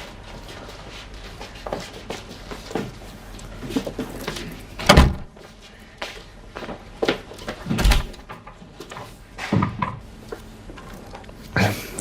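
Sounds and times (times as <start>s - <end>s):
knocks and thuds: 4.9s - 5.3s.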